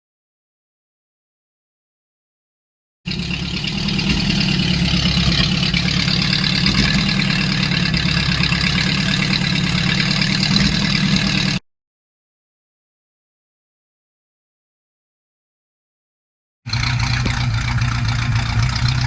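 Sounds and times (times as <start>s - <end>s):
car engine idling: 3.1s - 11.6s, 16.7s - 19.0s.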